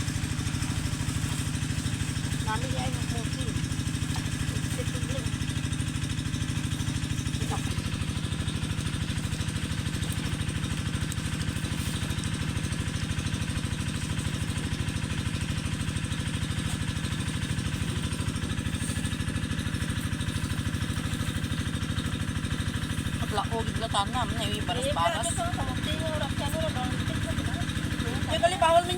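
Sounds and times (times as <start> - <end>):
small engine running: 0.0 - 28.9.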